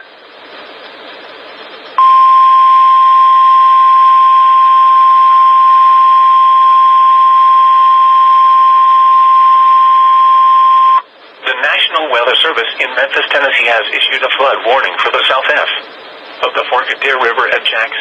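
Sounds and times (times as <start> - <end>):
steady alarm tone: 0.7 - 11.1
faint radio hiss: 11.1 - 18.0.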